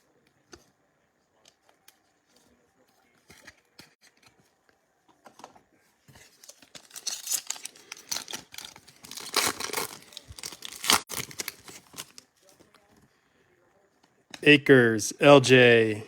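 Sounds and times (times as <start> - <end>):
wrapper tearing and crinkling: 6.4 - 12.2.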